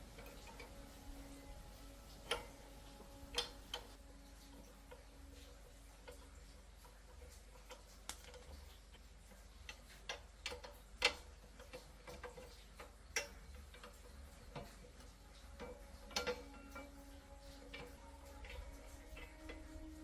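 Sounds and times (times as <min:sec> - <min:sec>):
tools and metal parts tapping: 0:00.0 - 0:06.3, 0:07.1 - 0:20.0
steady low hum: 0:00.0 - 0:20.0.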